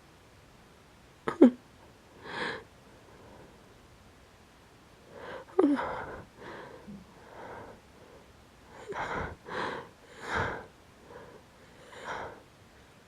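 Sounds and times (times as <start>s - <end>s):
woman gasping: 2.2s - 2.6s, 5.2s - 7.7s, 8.8s - 12.4s.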